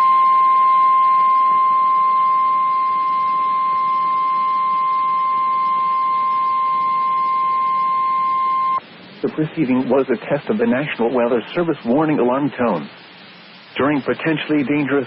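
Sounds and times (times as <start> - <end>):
steady high alarm tone: 0.0 - 8.8
radio static hiss: 1.1 - 15.0.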